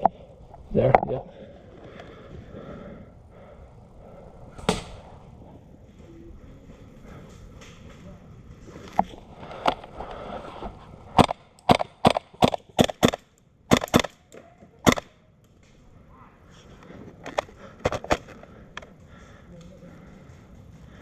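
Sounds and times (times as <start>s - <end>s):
airsoft rifle shots: 11.2s - 15.2s.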